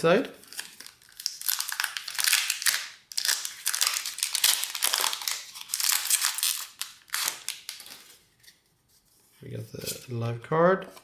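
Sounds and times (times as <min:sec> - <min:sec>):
foil wrapper crinkling: 0:00.4 - 0:08.0.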